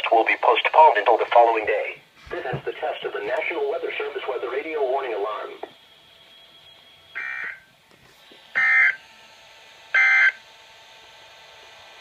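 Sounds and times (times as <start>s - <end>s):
faint radio hiss: 0.0s - 5.8s.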